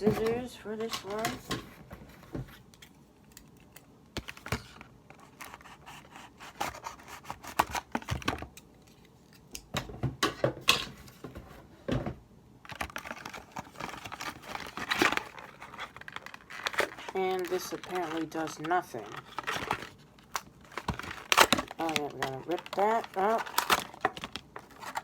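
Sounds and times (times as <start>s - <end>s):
packaging crinkling: 12.6s - 25.0s
scissors snipping packaging: 12.7s - 25.0s.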